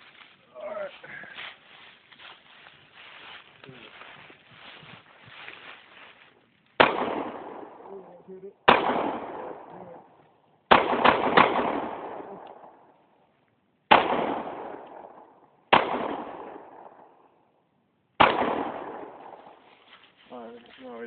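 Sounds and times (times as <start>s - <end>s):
pistol shots with echo: 6.8s - 8.0s, 8.6s - 10.1s, 10.7s - 12.9s, 13.9s - 17.2s, 18.2s - 19.6s.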